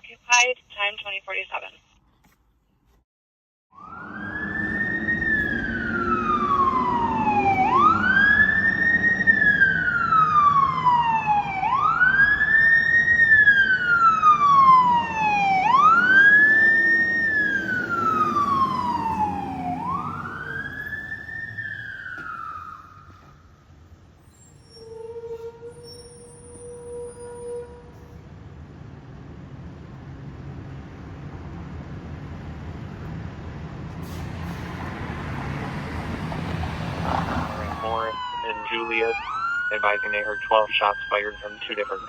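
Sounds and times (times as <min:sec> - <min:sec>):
fire engine siren wailing: 0:03.7 - 0:28.3, 0:34.0 - 0:42.0
truck engine rumbling: 0:03.8 - 0:24.7, 0:27.9 - 0:42.0.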